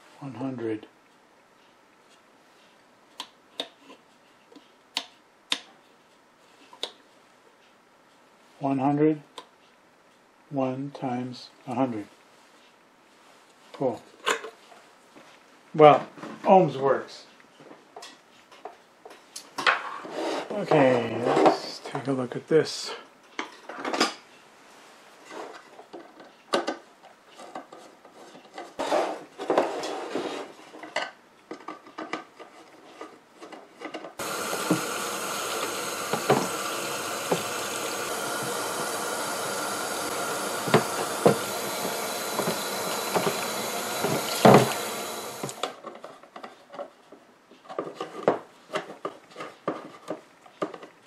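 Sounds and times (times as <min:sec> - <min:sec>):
loud steady hiss: 0:34.2 - 0:45.8.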